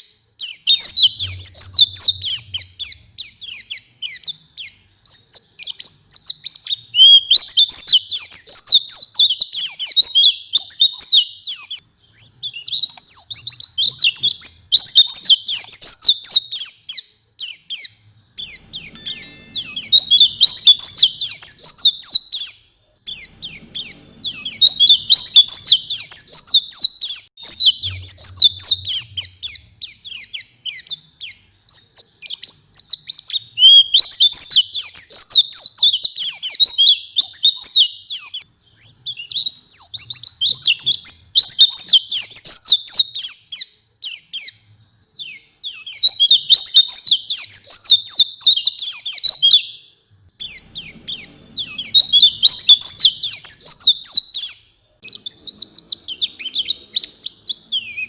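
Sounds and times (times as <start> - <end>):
bird singing high twittering: 0.4 - 44.6, 45.2 - 58.0.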